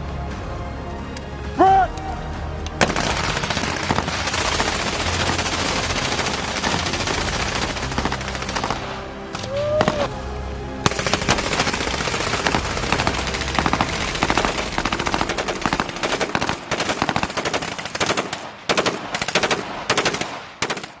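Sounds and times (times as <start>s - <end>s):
automatic rifle fire bursts: 11.2s - 21.0s.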